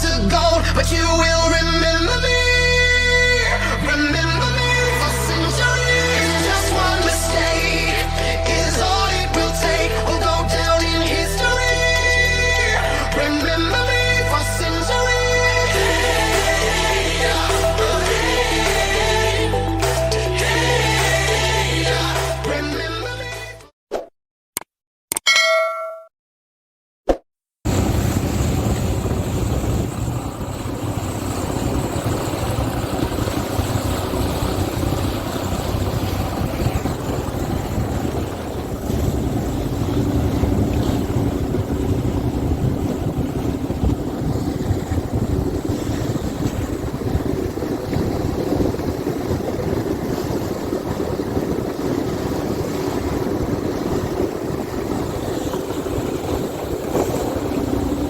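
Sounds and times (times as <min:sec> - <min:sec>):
motorboat engine running: 0:00.0 - 0:22.6, 0:27.7 - 0:58.0
water splashing against hull: 0:27.7 - 0:58.0
wind rushing over microphone: 0:27.7 - 0:58.0.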